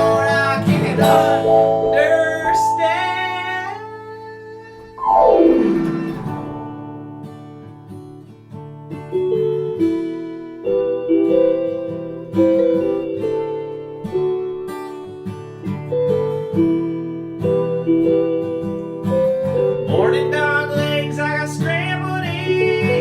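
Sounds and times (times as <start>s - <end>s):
band playing guitar-led instrumental: 5.0s - 6.8s.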